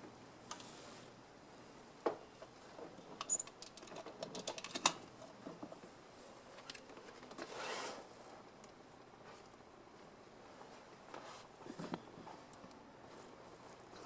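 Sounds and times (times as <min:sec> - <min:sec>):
light clicks and rattles: 0:02.8 - 0:05.8.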